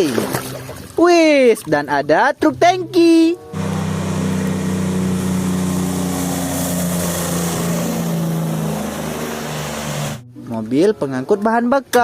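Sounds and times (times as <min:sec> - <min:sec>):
truck engine running: 0:02.6 - 0:10.4.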